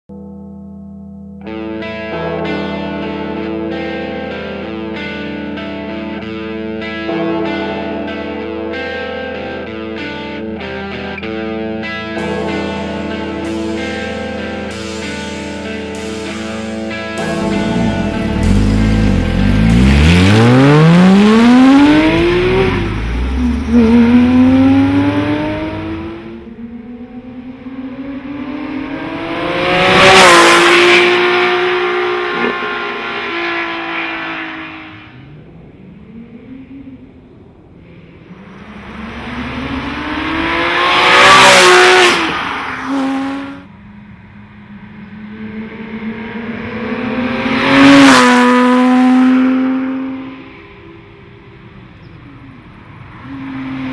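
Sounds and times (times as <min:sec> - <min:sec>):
car engine accelerating: 0:16.9 - 0:53.9.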